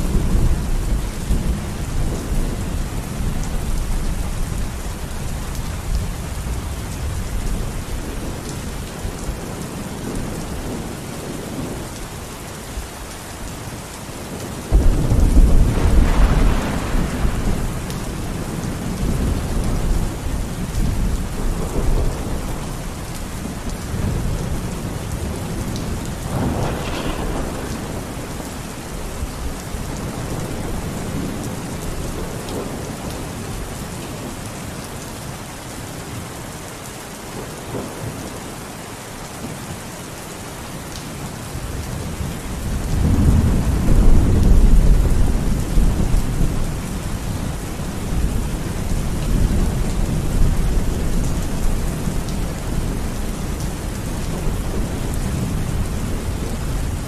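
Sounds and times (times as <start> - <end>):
steady rain: 0.0 - 57.0
thunder crackle: 14.7 - 22.9, 23.9 - 32.9
thunder rumble: 14.7 - 33.4.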